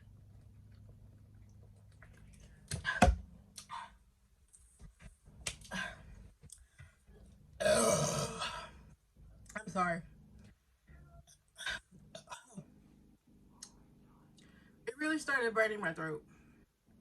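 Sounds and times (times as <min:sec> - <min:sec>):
loud rough burp: 0:07.6 - 0:08.8.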